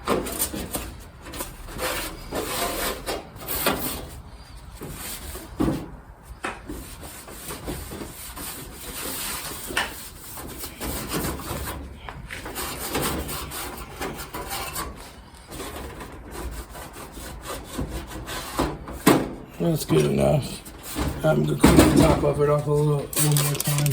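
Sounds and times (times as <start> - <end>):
hand scrubbing a metal cover: 6.6 - 19.0.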